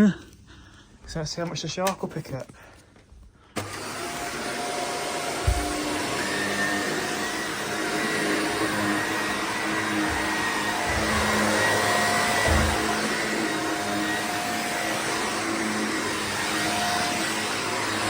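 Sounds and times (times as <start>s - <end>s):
vacuum cleaner running on carpet: 3.6s - 18.0s.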